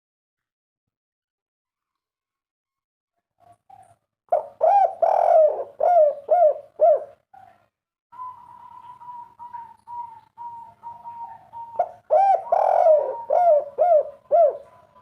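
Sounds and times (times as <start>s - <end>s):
dove cooing: 3.7s - 7.6s, 8.2s - 15.0s.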